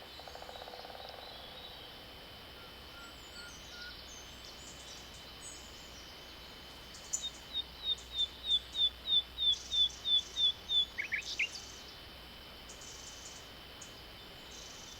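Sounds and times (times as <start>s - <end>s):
songbird singing: 0.0s - 2.0s, 2.6s - 12.0s.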